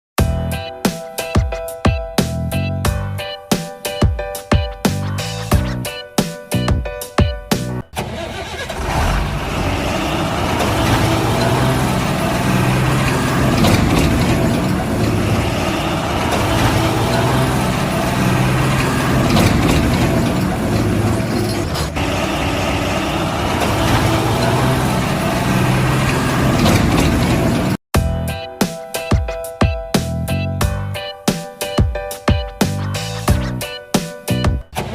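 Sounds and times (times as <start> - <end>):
vehicle engine running: 8.0 - 27.8.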